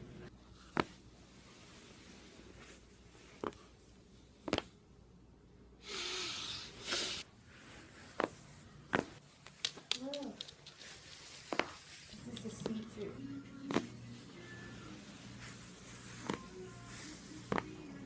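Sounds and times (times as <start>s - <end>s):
breathy exhale: 5.8s - 7.2s.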